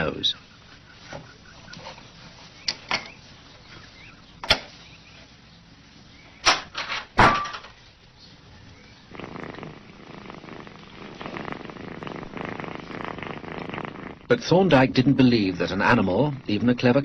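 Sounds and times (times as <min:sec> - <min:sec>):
cat purring: 0:08.4 - 0:17.0.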